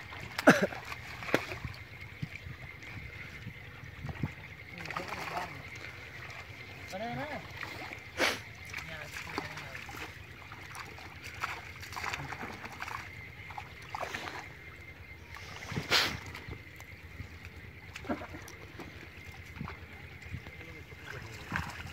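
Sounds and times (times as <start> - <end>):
water splashing and sloshing: 0.0 - 21.9.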